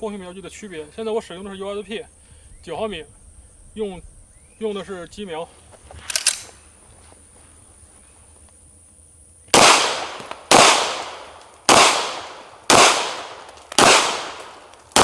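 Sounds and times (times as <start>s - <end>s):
pistol shots echoing: 9.5s - 15.0s.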